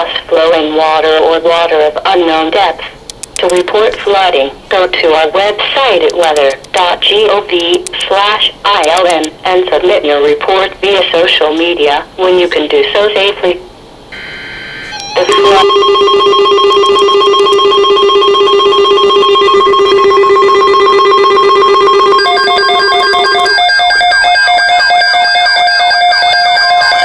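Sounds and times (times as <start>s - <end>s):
electronic weather alert tones: 3.4s - 13.5s, 14.1s - 27.0s.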